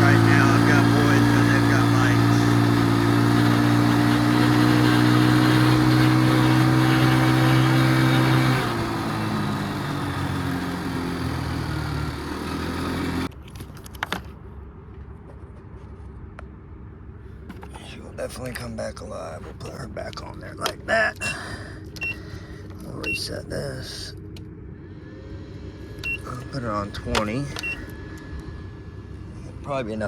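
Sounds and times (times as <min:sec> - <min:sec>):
small atv engine idling: 0:00.0 - 0:13.3.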